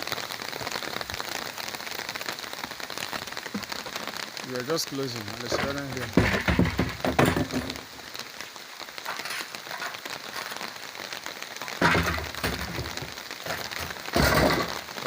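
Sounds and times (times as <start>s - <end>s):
steady rain: 0.0s - 15.0s
low knocks and rumbles: 5.5s - 7.8s.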